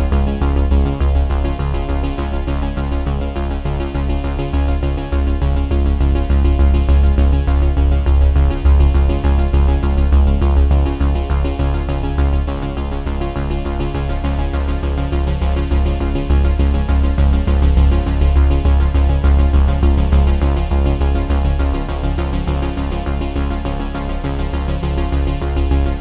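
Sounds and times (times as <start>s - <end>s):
electronic music with pulsing bass: 0.0s - 26.0s.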